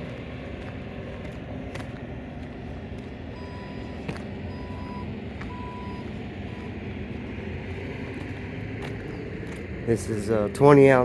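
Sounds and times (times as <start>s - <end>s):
low engine rumble: 0.0s - 11.0s
reversing alarm beeping: 3.3s - 6.8s.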